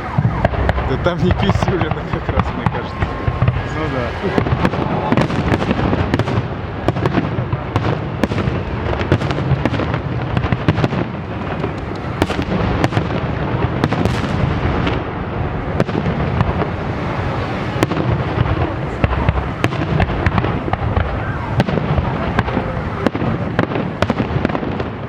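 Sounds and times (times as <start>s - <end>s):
low rumble: 0.0s - 7.0s
fireworks bursts and bangs: 0.0s - 25.0s
sharp fireworks cracks: 0.0s - 25.0s.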